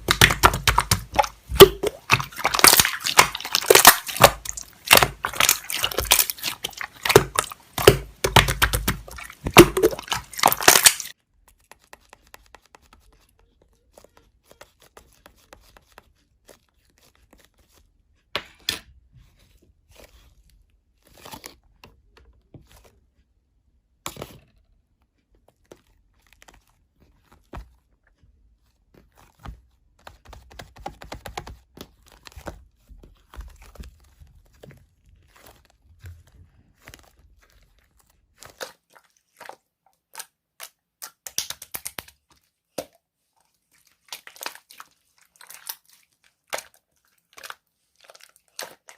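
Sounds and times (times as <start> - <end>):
crinkling handling noise: 0.0 - 13.3, 24.1 - 41.0.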